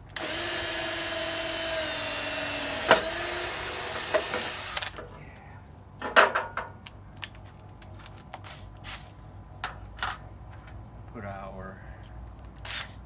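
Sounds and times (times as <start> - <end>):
electric drill boring: 0.0 - 5.0.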